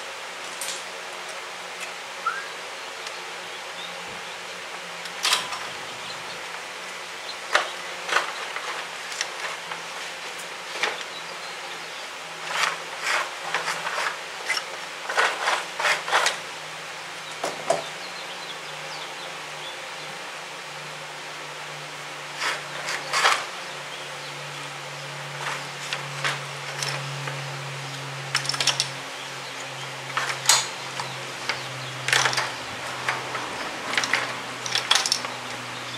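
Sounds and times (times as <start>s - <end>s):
low buzzing hum: 0.0s - 15.5s, 16.2s - 35.9s
tools clicking and clattering: 5.0s - 5.8s, 25.4s - 27.4s, 28.3s - 29.0s, 30.1s - 35.6s.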